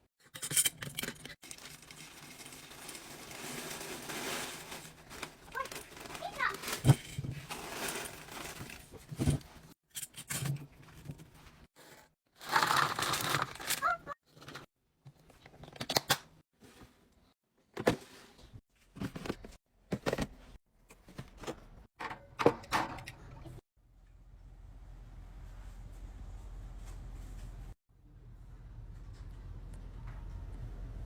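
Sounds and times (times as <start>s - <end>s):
plastic packaging crinkling: 1.4s - 9.0s, 12.4s - 14.0s.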